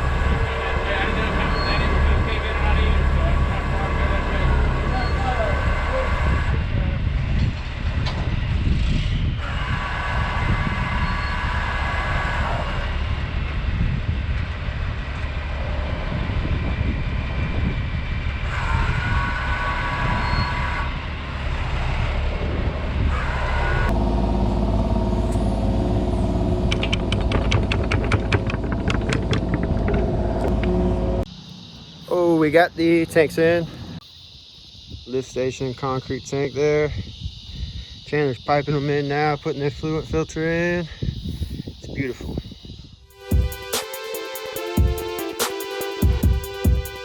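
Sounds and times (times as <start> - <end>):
diesel engine under load: 0.0 - 31.3
engine drone: 0.0 - 34.0
hydraulic whine: 0.0 - 34.0
rapid clatter: 24.9 - 31.2.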